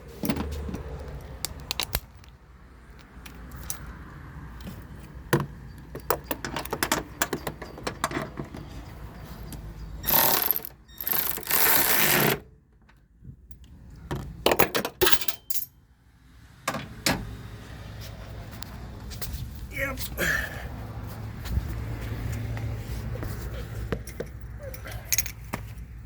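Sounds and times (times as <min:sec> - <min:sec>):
hand tools clicking and clinking: 0:00.2 - 0:04.0, 0:04.6 - 0:12.4, 0:24.0 - 0:25.8.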